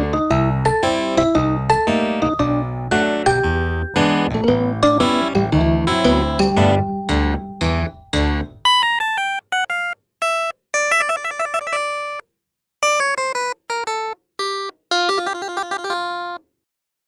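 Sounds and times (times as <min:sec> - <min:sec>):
melody of short picked notes: 0:00.0 - 0:12.2.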